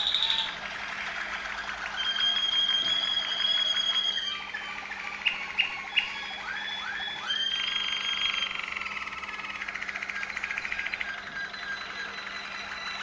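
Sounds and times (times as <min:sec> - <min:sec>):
canary singing: 0:00.0 - 0:13.0.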